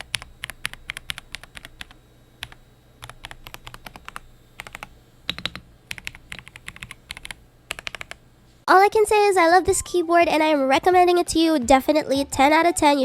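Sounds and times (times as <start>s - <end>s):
mechanical keyboard typing: 0.0s - 8.2s.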